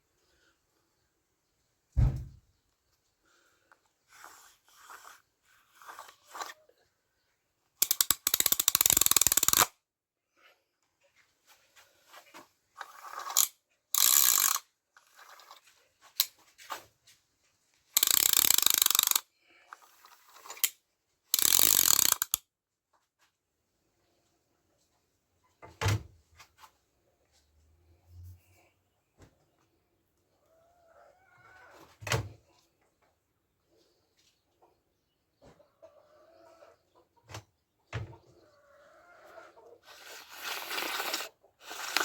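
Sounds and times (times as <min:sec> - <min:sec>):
ratchet clicking rapidly: 0:07.8 - 0:09.7, 0:12.9 - 0:14.6, 0:18.0 - 0:19.2, 0:21.4 - 0:22.4.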